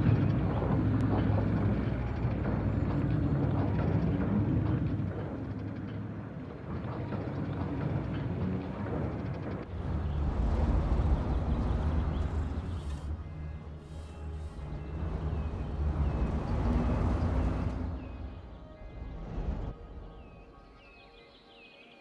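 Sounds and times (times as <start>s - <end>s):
traffic engine rumble: 0.0s - 19.9s
louder vehicle passing: 9.7s - 19.7s.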